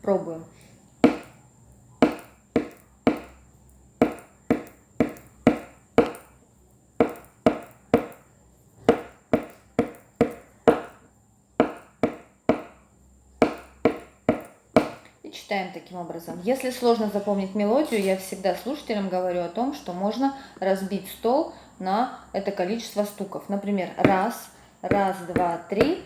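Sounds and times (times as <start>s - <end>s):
pencil tapping on tabletop: 1.0s - 1.4s, 2.0s - 3.4s, 4.0s - 6.4s, 7.0s - 12.8s, 13.4s - 15.1s, 24.0s - 24.3s, 24.9s - 26.0s.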